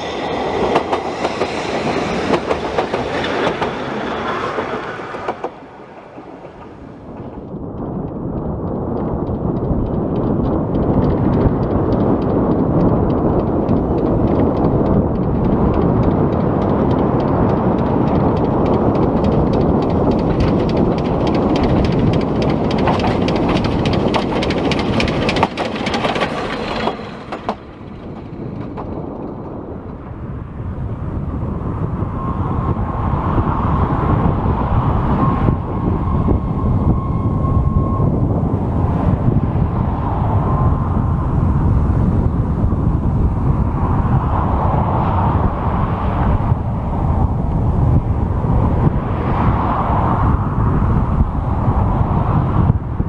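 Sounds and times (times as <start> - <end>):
wheels clicking rapidly: 0.0 - 30.0
train rumbling on rails: 0.0 - 53.0.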